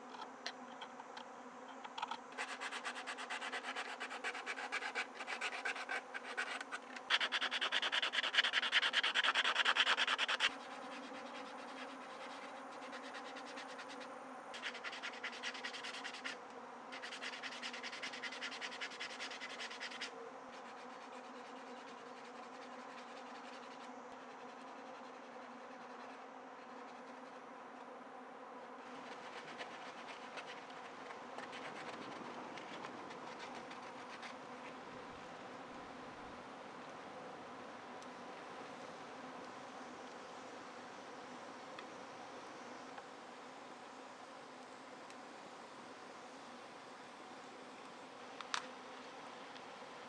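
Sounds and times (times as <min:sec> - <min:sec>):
faint steady buzz: 0:00.0 - 0:50.0
rubbing strokes on wood: 0:02.4 - 0:14.0, 0:28.8 - 0:34.4.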